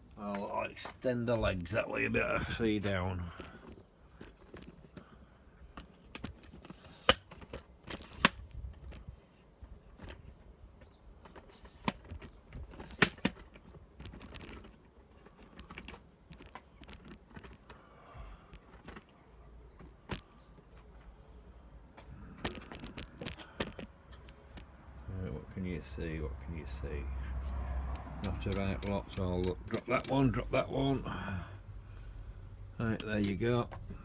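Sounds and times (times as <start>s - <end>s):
rustling: 0.0s - 25.0s
tripod clicks and knocks: 5.8s - 9.0s, 11.2s - 17.8s.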